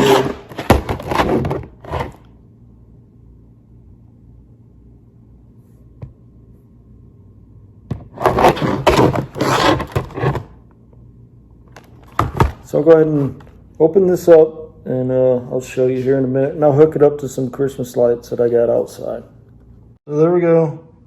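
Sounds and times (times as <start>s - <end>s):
package scraping and rustling: 0.0s - 2.3s, 8.1s - 10.6s
faint steady hum: 0.0s - 21.0s.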